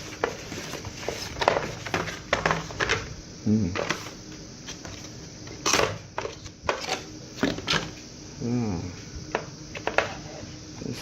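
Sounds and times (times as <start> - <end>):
person humming: 3.4 - 3.8, 8.4 - 9.0.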